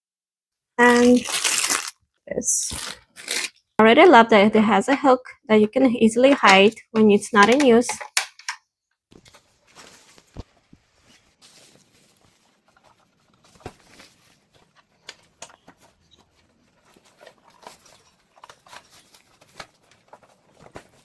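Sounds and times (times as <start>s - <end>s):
rustling: 9.1s - 21.0s.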